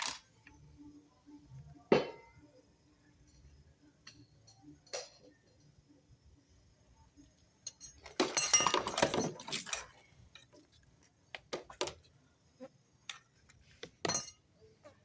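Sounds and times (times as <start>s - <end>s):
small hard objects clinking: 0.0s - 0.3s, 7.7s - 10.0s.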